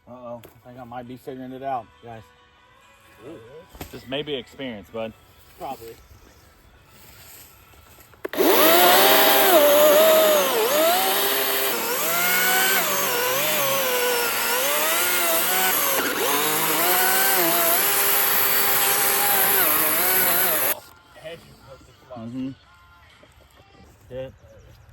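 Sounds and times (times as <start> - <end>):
chainsaw cutting wood: 8.2 - 20.9.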